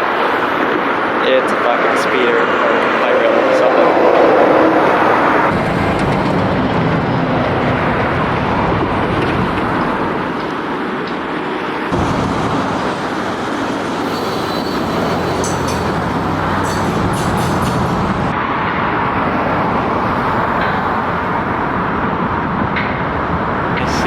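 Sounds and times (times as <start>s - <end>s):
rail vehicle engine droning: 0.0s - 24.0s
faint high squeaks: 14.0s - 18.3s.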